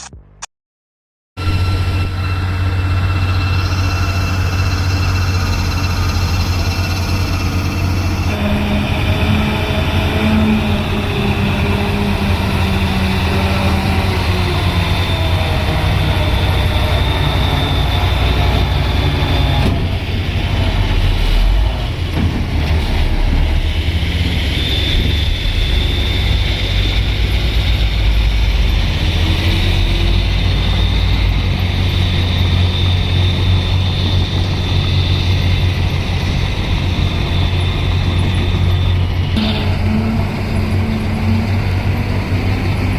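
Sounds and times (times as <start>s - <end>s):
high-pitched whine: 1.4s - 22.1s, 23.0s - 42.9s
truck engine rumbling: 1.4s - 42.9s.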